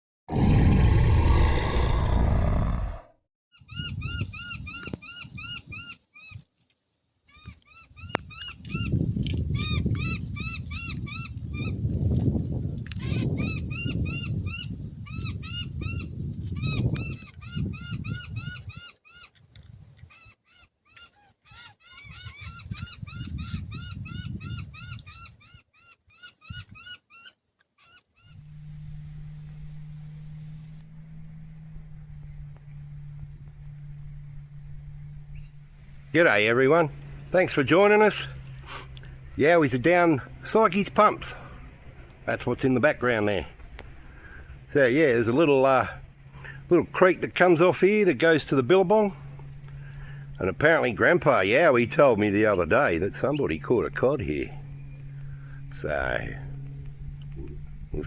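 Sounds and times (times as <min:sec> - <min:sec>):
low rumble: 0:00.3 - 0:03.0, 0:28.4 - 0:58.0
steady low hum: 0:28.3 - 0:58.0.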